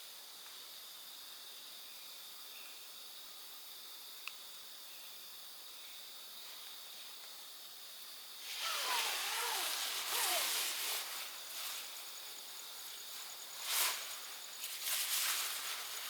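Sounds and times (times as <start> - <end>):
high pulsing insect trill: 7.6 - 16.0
wind hiss in gusts: 8.3 - 16.0.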